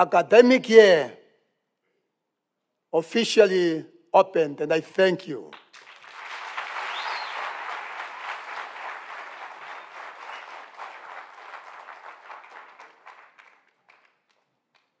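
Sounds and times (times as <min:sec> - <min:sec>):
audience applauding: 0:05.5 - 0:15.0.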